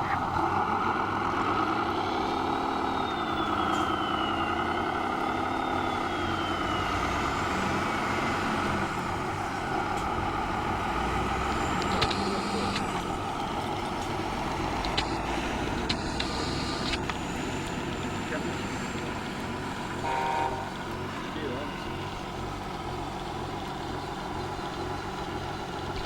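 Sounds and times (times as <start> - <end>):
model truck motor whine: 0.0 - 26.0
sharp clicks: 11.4 - 17.8.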